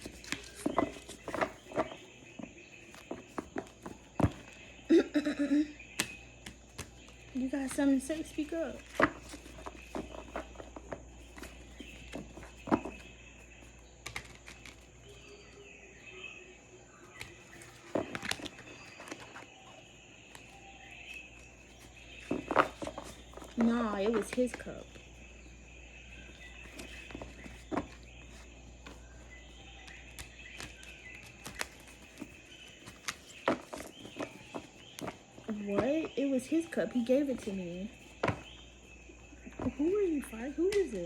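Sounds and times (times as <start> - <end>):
faint bird calls: 0.0 - 41.0
high insect drone: 33.4 - 41.0.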